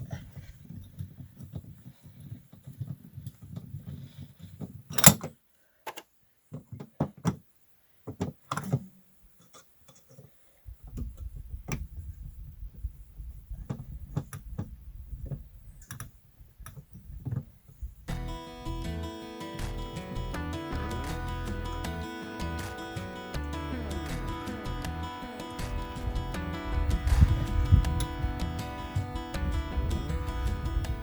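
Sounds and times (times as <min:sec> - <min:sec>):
tools clicking and knocking: 0:04.9 - 0:05.3
low rumble: 0:23.4 - 0:31.0.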